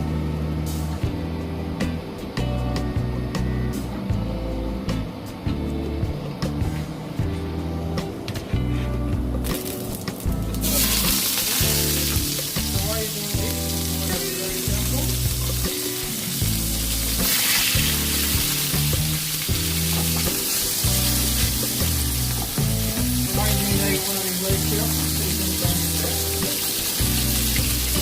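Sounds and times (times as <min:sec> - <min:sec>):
fish frying in hot oil: 0:09.4 - 0:28.0.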